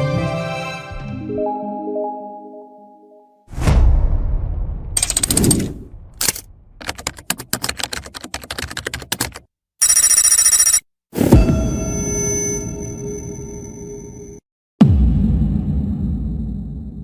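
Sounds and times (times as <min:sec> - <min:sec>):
bright high ringing: 0:11.4 - 0:14.4.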